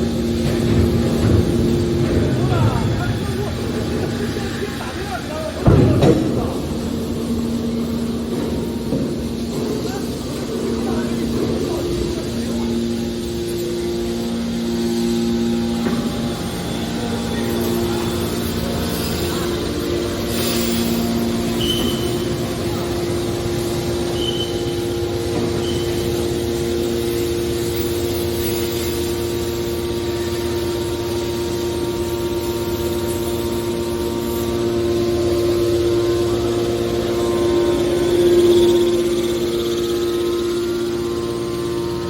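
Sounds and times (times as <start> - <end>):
hydraulic power unit humming: 0.0 - 42.0
short high squeaks: 21.6 - 22.2, 24.1 - 24.9.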